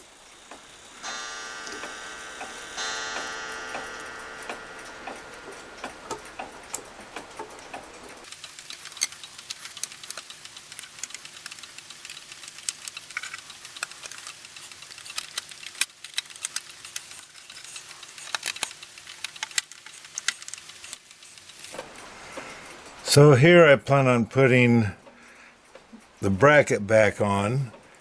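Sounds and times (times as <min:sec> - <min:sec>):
small hard objects clicking: 0:06.1 - 0:22.0.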